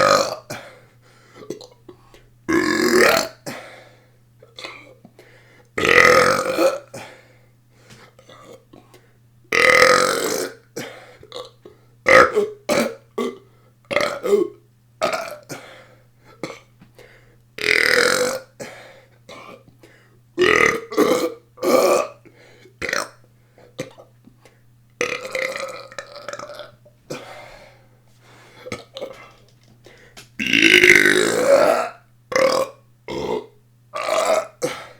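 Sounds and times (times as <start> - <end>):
person burping: 0.0 - 0.6, 2.5 - 3.6, 5.8 - 7.1, 9.5 - 15.6, 17.6 - 18.6, 20.4 - 22.2, 22.8 - 23.2, 25.0 - 27.4, 30.4 - 34.9.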